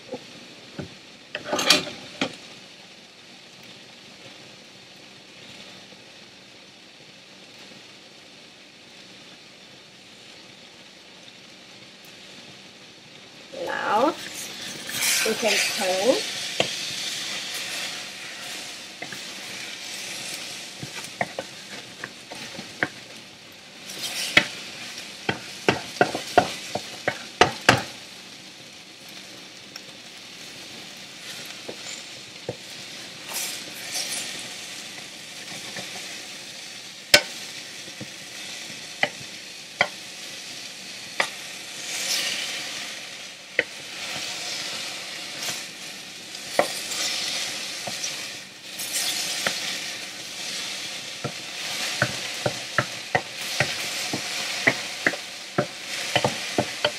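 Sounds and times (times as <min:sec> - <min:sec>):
food sizzling in a frying pan: 0:00.0 - 0:56.9
spatula clicking and scraping pan: 0:14.2 - 0:23.2, 0:23.9 - 0:28.0, 0:33.3 - 0:36.2, 0:37.2 - 0:37.4, 0:38.0 - 0:40.0, 0:41.2 - 0:42.5, 0:43.6 - 0:44.8, 0:46.4 - 0:56.9.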